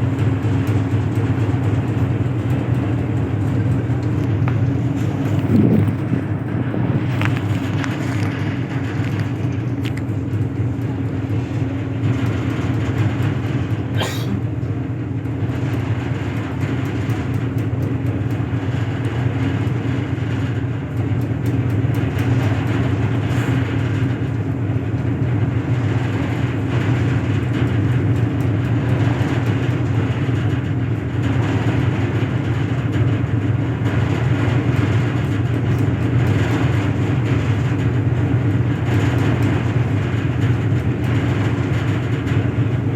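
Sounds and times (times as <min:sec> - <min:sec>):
engine droning steadily: 0:00.0 - 0:42.9.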